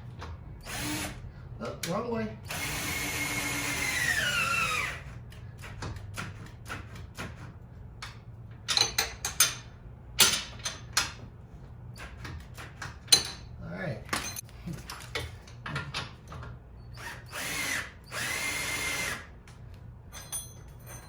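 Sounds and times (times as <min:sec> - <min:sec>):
power tool motor whining: 0:02.5 - 0:05.1, 0:17.0 - 0:19.3
metallic clinks of tools: 0:20.1 - 0:21.0.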